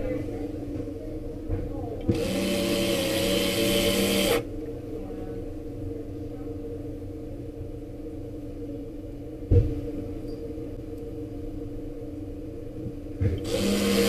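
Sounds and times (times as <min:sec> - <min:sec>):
low background hum: 0:00.0 - 0:14.0
small machine hissing and humming: 0:02.0 - 0:04.5, 0:13.4 - 0:14.0.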